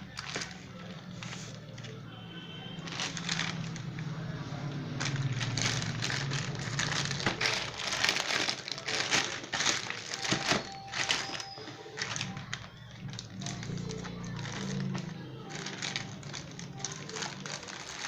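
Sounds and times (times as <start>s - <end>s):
packaging crinkling and rustling: 0.0s - 2.0s, 2.8s - 4.0s, 4.9s - 18.0s.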